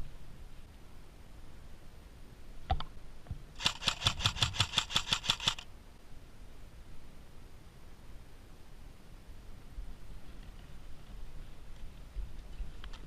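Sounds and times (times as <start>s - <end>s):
airsoft gun rapid firing: 3.6s - 5.6s
sharp click: 3.6s - 5.6s.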